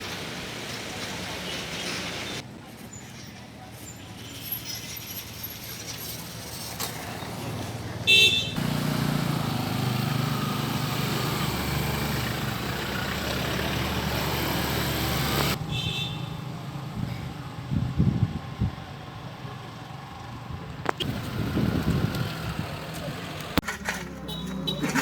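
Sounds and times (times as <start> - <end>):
vehicle horn toot: 8.1 - 8.9, 15.4 - 16.4, 24.2 - 25.0
vehicle engine running: 8.6 - 25.0.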